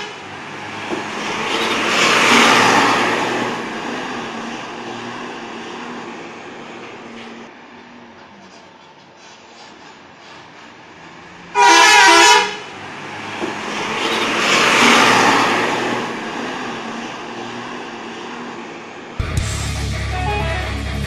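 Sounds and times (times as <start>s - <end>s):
multi-tone bus horn blast: 0.0s - 0.3s, 11.5s - 12.7s, 20.0s - 21.0s
vehicle passing by: 0.4s - 7.1s, 12.8s - 18.8s
guitar music: 19.2s - 21.0s.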